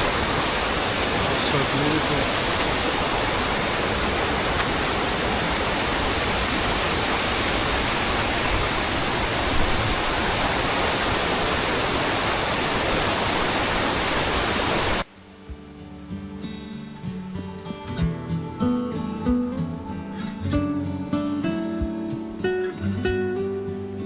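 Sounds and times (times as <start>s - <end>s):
waterfall rushing: 0.0s - 16.2s
acoustic guitar music: 15.1s - 24.0s.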